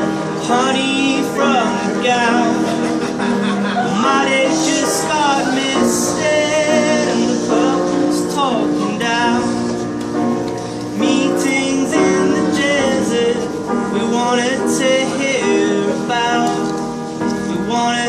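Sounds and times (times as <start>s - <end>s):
instrumental accompaniment: 0.0s - 18.0s
man and woman singing in harmony: 0.4s - 9.6s, 11.0s - 16.8s.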